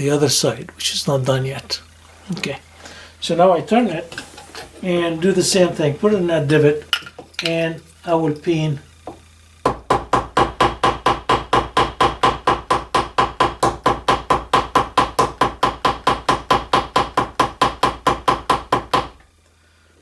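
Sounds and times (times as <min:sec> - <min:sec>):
hammer tapping rivet: 0:09.0 - 0:19.3.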